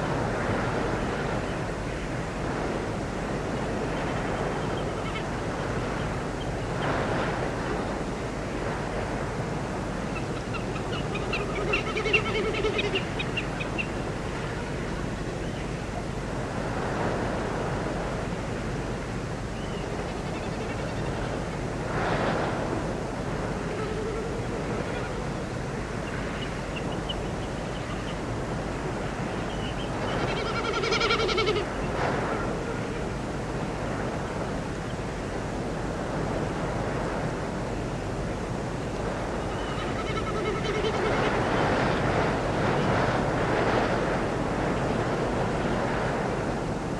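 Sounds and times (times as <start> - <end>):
bird calls: 10.1 - 14.0.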